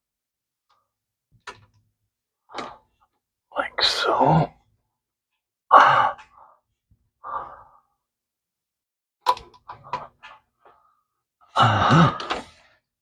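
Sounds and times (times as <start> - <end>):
person straining grunt: 11.6 - 12.4.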